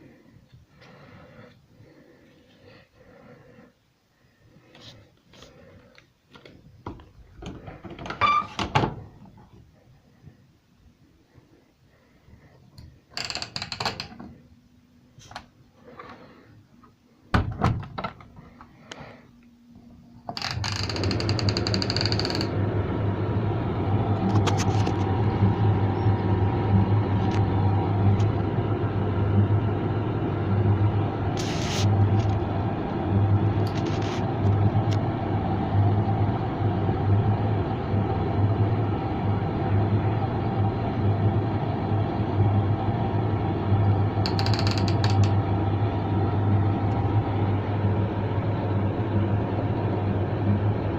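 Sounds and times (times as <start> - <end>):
dryer door knocks and thunk: 17.3 - 17.9
tumble dryer humming and rumbling: 20.3 - 50.9.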